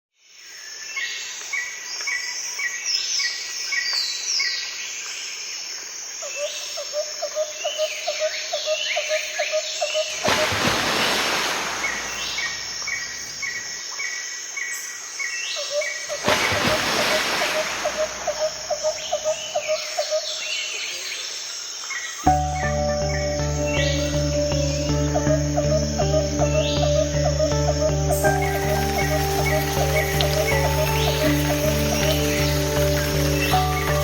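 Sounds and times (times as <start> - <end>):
birds chirping and whistling: 22.3 - 34.0.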